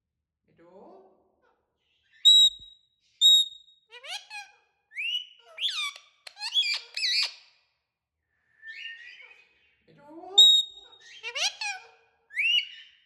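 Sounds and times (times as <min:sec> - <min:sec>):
parrot squeaky calls: 0:02.1 - 0:07.6, 0:10.4 - 0:13.0
parrot whistle: 0:02.2 - 0:03.7, 0:10.4 - 0:11.7, 0:12.3 - 0:12.9.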